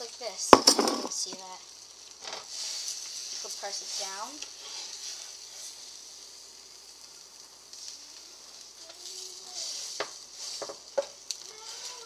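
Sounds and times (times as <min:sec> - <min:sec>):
sandwich sizzling in a frying pan: 0:00.0 - 0:12.0.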